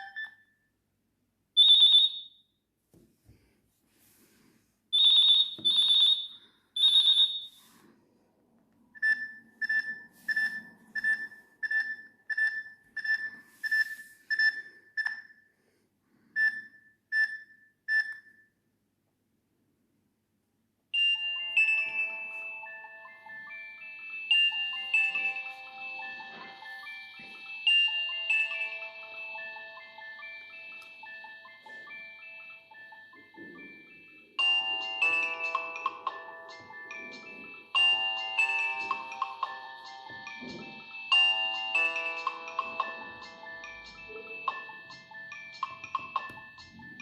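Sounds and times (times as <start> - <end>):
chime-like ringtone: 0.0 - 0.5, 5.0 - 7.6, 20.9 - 47.0
high electronic phone beeps: 0.0 - 0.5, 1.6 - 2.4, 5.0 - 7.6, 9.0 - 15.4, 16.4 - 18.4.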